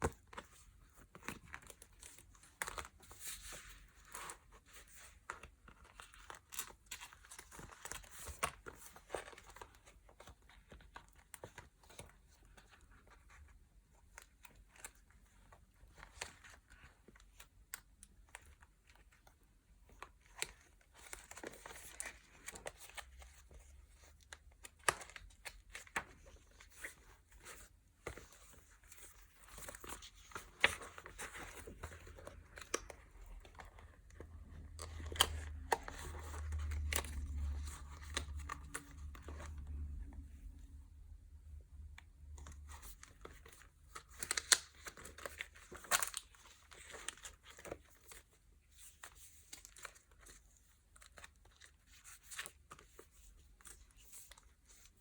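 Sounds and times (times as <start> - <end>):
packaging rustling and crinkling: 18.3 - 40.2, 42.3 - 55.0.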